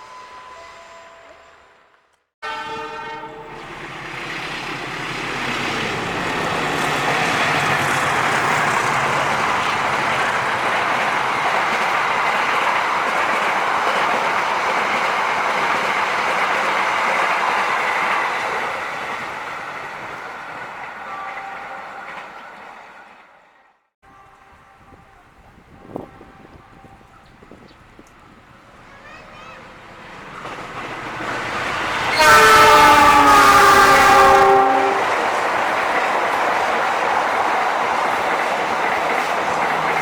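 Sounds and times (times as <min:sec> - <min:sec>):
train passing at speed: 0:00.0 - 0:40.0
train horn blast: 0:02.4 - 0:03.9, 0:31.7 - 0:35.4.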